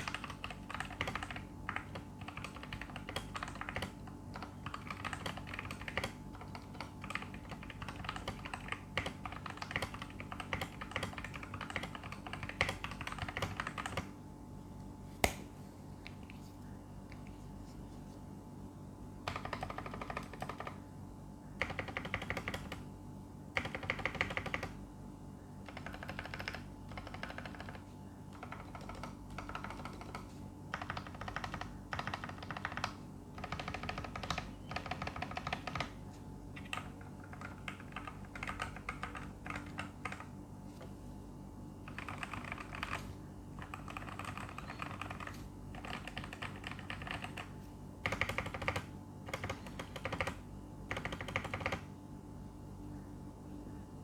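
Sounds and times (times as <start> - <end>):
typing on mechanical keyboard: 0.0 - 14.2, 19.2 - 20.8, 21.6 - 22.8, 23.5 - 24.8, 25.6 - 36.0, 36.6 - 40.3, 41.8 - 51.9.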